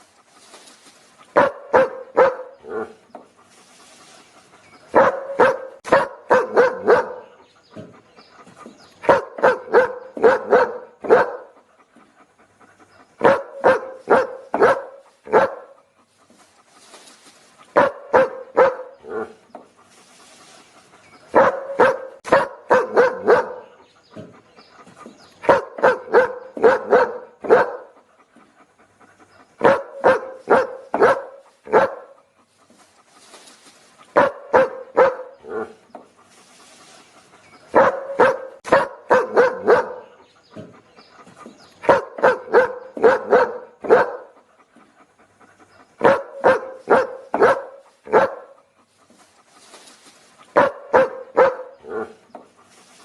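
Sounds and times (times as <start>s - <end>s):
dog barking: 1.3s - 3.0s, 4.9s - 7.4s, 9.0s - 11.6s, 13.2s - 15.8s, 17.8s - 19.4s, 21.3s - 23.8s, 25.4s - 28.0s, 29.6s - 32.2s, 34.1s - 35.8s, 37.7s - 40.7s, 41.8s - 44.4s, 46.0s - 48.6s, 50.5s - 52.2s.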